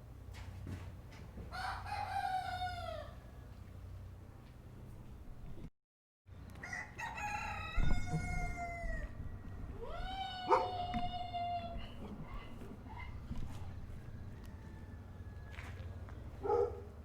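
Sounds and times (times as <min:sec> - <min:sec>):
low barnyard rumble: 0:00.0 - 0:05.7, 0:06.3 - 0:17.0
rooster crowing: 0:01.5 - 0:03.4, 0:06.6 - 0:11.9, 0:12.9 - 0:16.0.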